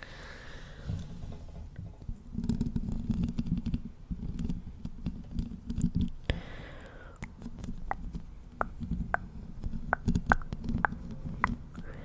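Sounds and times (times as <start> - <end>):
fingers scratching on microphone: 2.3 - 6.2, 7.3 - 11.9.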